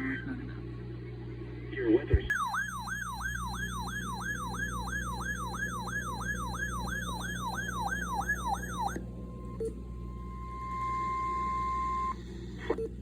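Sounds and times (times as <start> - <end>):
electronic siren rapid wail: 2.3 - 9.0
steady alert tone: 2.3 - 9.0.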